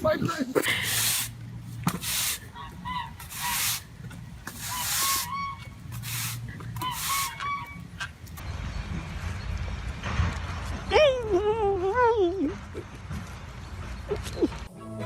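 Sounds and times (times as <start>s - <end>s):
farm birds honking: 2.5s - 3.9s, 4.6s - 8.1s.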